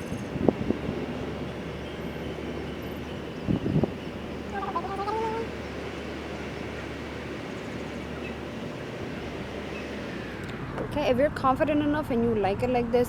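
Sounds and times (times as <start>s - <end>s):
wind on microphone: 0.0s - 5.6s
faint pitched call: 4.5s - 5.6s.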